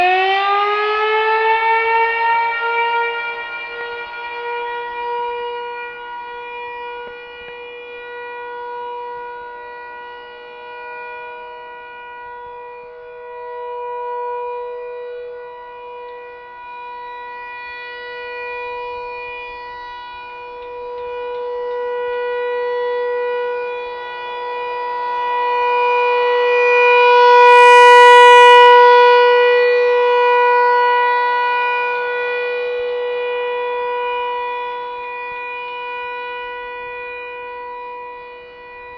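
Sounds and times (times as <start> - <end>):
siren steady wail: 0.0 - 38.9.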